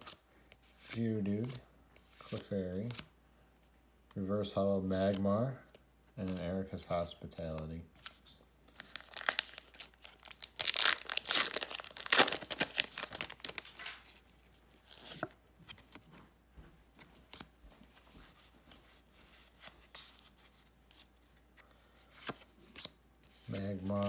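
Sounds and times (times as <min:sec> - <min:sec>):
foil wrapper tearing and crinkling: 0:08.8 - 0:14.0.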